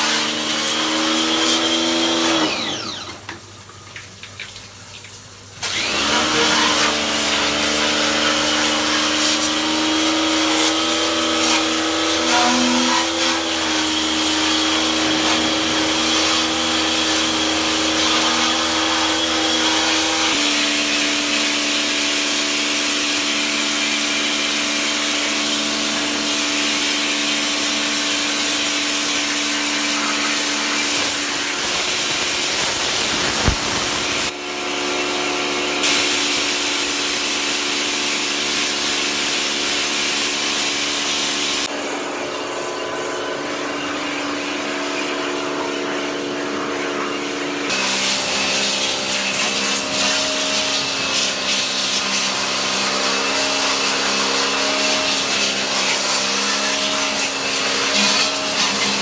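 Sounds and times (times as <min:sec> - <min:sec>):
electric motor humming: 0:30.3 - 0:34.3.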